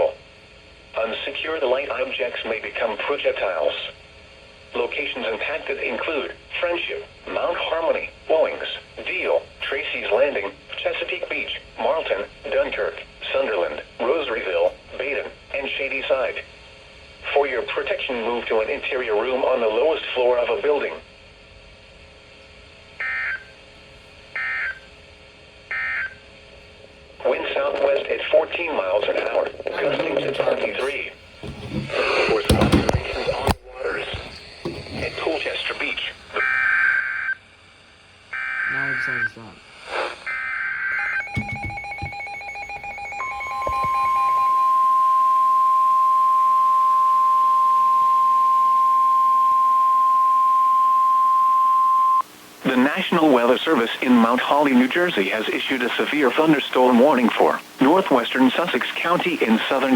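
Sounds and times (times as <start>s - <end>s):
steady warning alarm tone: 24.3s - 24.9s, 25.7s - 26.2s, 38.3s - 39.4s, 40.2s - 59.9s.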